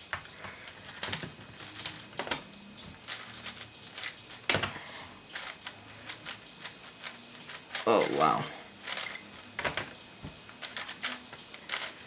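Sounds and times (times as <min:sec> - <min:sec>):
puzzle cube plastic clicks: 0:03.0 - 0:08.2, 0:08.8 - 0:12.0.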